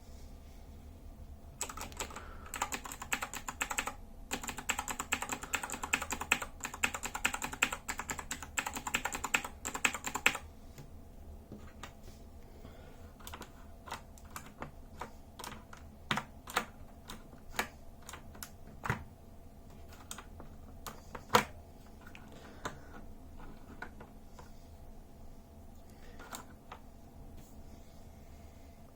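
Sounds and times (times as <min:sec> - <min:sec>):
mechanical keyboard clicking: 0:01.6 - 0:10.4, 0:13.2 - 0:19.0.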